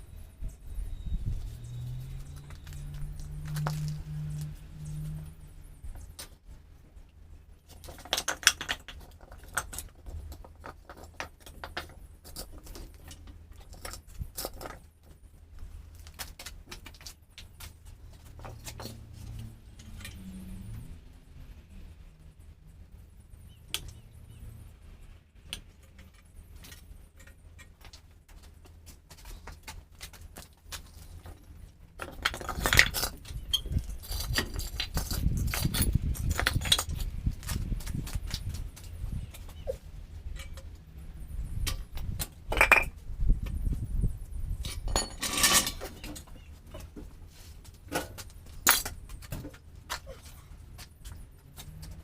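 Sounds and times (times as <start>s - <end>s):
metal tools clinking: 44.6s - 46.3s.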